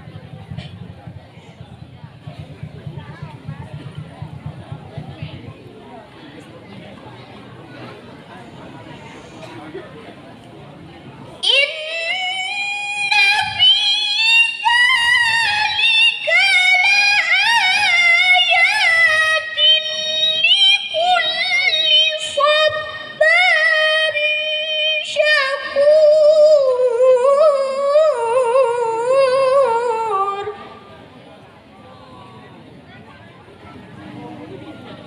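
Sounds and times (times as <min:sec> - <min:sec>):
woman reciting in melodic chant: 0:11.4 - 0:30.9.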